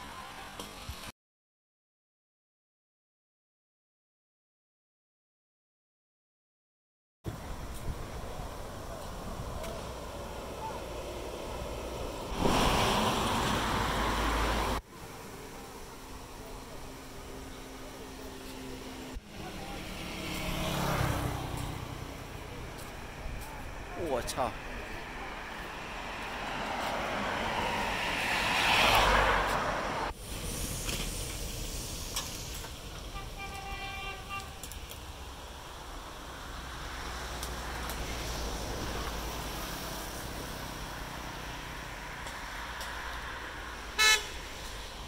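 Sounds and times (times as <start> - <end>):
wind gusts rushing: 24.5 - 30.2.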